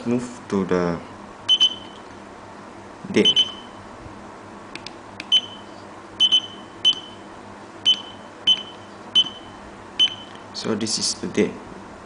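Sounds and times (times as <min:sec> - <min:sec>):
short high beeps: 0:03.2 - 0:03.8, 0:05.3 - 0:07.2, 0:07.9 - 0:10.4.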